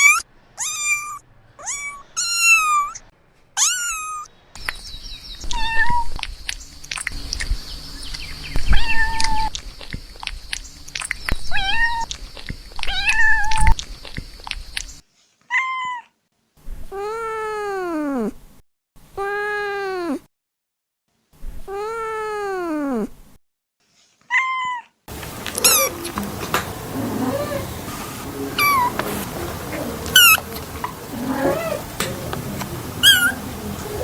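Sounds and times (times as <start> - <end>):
kittens meowing: 0.0 - 3.0, 3.6 - 4.3, 5.4 - 6.2, 8.6 - 9.6, 11.5 - 12.2, 12.8 - 13.8, 25.4 - 34.0
rustling clicking noise: 6.1 - 8.2, 9.2 - 12.9, 13.5 - 15.0, 25.1 - 34.0.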